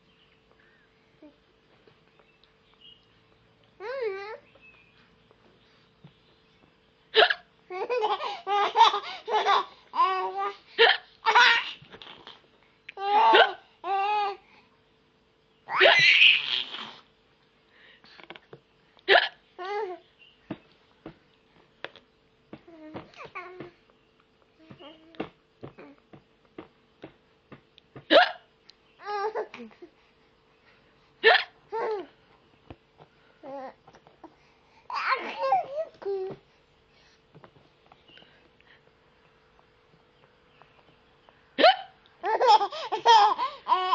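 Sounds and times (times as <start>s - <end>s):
woman hiccuping: 7.2s - 7.4s, 10.8s - 11.0s, 13.3s - 13.6s, 19.1s - 19.4s, 28.1s - 28.5s, 31.2s - 31.6s, 41.6s - 42.0s
baby laughing: 7.2s - 12.4s, 15.7s - 17.0s, 34.9s - 36.0s, 41.6s - 43.9s.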